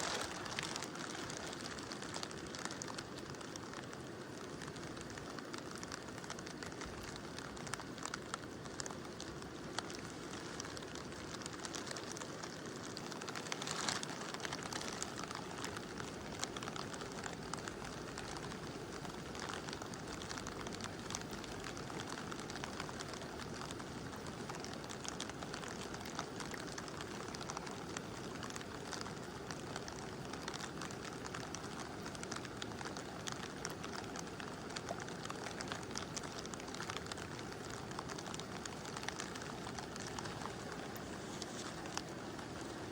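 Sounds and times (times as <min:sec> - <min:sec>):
river rushing: 0:00.0 - 0:17.7
light rain pattering: 0:00.0 - 0:42.9.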